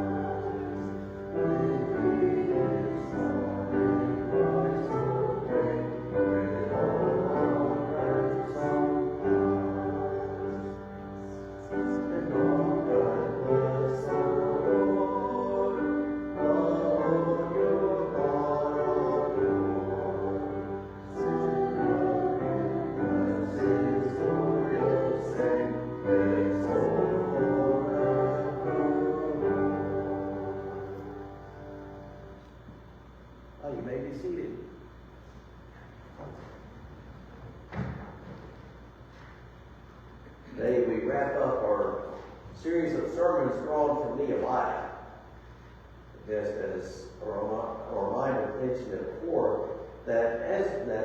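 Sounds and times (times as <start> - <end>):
choir singing: 0.0 - 32.4
keyboard accompaniment: 0.0 - 32.8.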